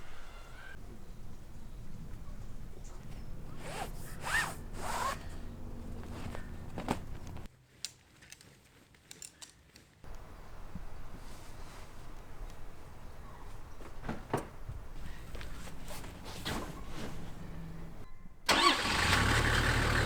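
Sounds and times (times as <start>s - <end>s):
zipper pulled: 3.5s - 7.5s.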